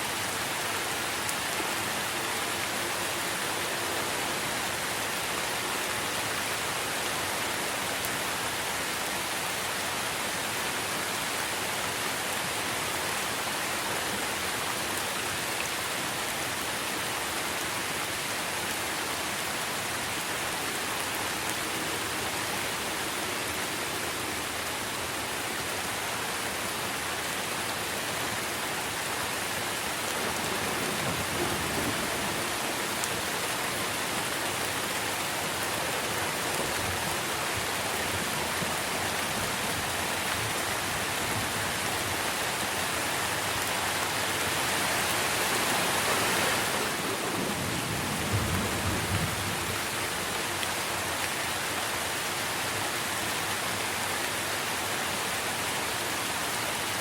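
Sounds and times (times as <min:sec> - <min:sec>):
rain falling on tree leaves: 0:00.0 - 0:57.0.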